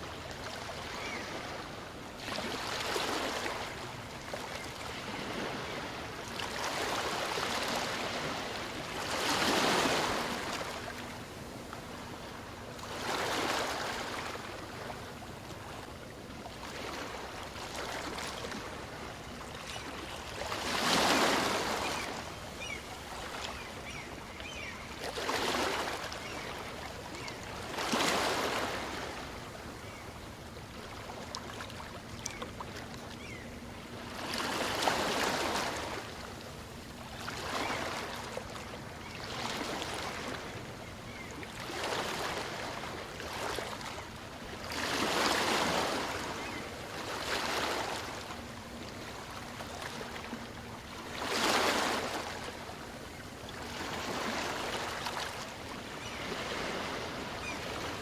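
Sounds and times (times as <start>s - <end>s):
small waves washing ashore: 0.0s - 58.0s.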